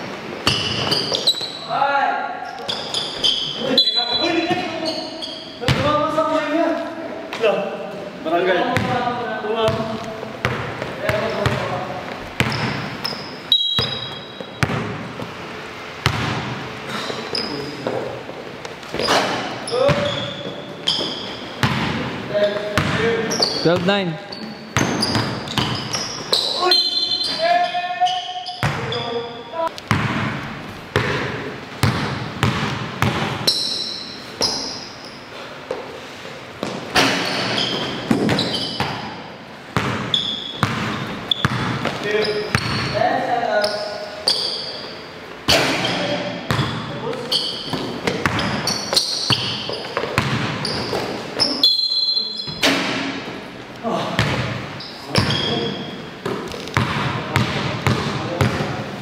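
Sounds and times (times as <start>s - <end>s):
sneakers squeaking on floor: 0.0s - 8.0s, 8.6s - 15.4s, 16.0s - 59.0s
basketball bouncing on court: 5.6s - 6.1s, 8.7s - 9.0s, 9.6s - 15.3s, 16.0s - 16.6s, 18.9s - 24.0s, 24.7s - 26.5s, 28.5s - 29.0s, 29.8s - 34.8s, 36.6s - 43.0s, 45.5s - 51.2s, 54.1s - 58.9s.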